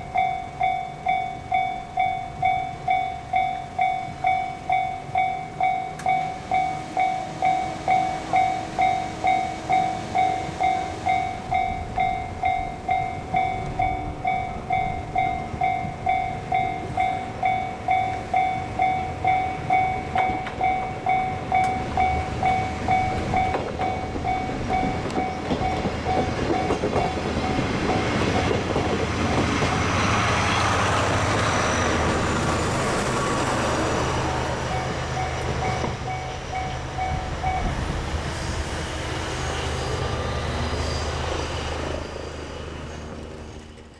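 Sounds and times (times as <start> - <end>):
level crossing bell clanging: 0.0 - 28.2
diesel train rumble and engine: 0.0 - 43.9.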